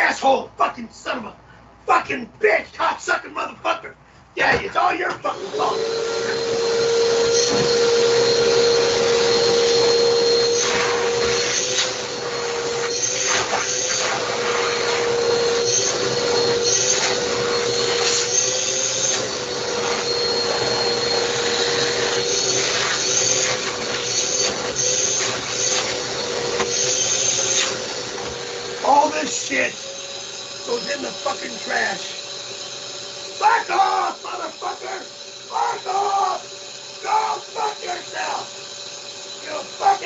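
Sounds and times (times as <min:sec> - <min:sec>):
shop vacuum running: 0:04.5 - 0:40.0.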